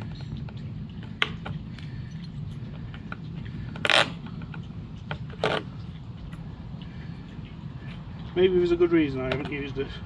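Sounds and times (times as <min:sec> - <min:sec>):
steady low rumble: 0:00.0 - 0:10.0.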